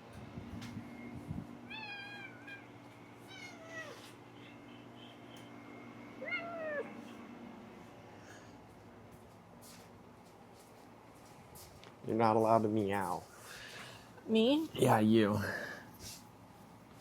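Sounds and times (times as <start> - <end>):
cat meowing: 1.7 - 4.2, 6.2 - 7.0.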